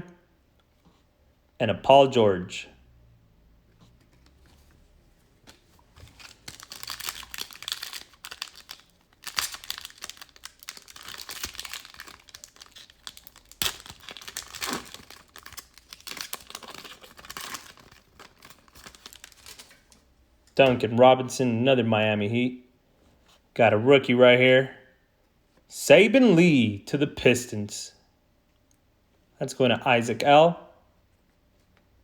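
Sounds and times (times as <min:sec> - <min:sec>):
plastic wrapper crinkling: 0:05.4 - 0:20.1.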